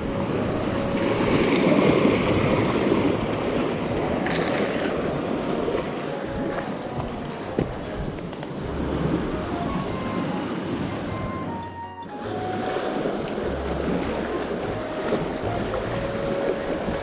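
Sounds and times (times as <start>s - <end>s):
sea waves washing against breakwater: 0.0s - 17.0s
wind buffeting microphone: 0.0s - 17.0s.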